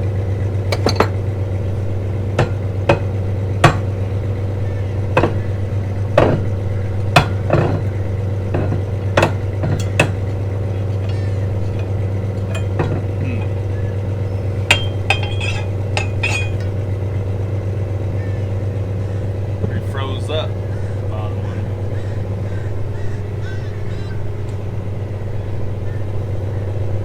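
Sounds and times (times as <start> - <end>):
low machinery hum: 0.0 - 27.0
metal tool clinking and knocking: 0.7 - 1.3, 2.3 - 16.9
ringing metal hits: 0.7 - 18.7.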